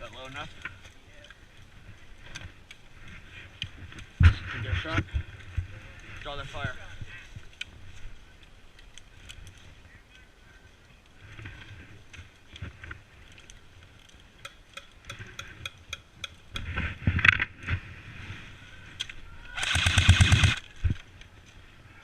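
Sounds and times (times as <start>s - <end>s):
airsoft gun full-auto burst: 19.6s - 20.6s.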